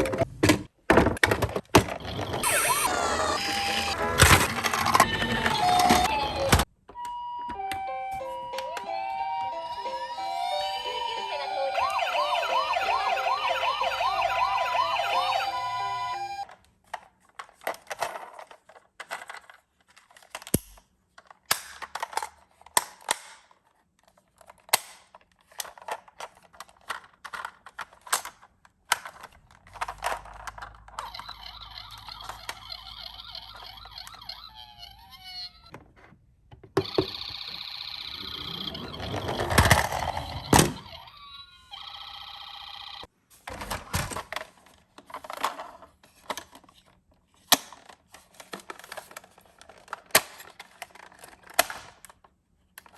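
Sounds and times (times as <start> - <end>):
toy ambulance siren: 1.8 - 16.6, 30.5 - 35.7, 36.8 - 43.1
music jingle: 2.0 - 16.4, 37.0 - 43.1.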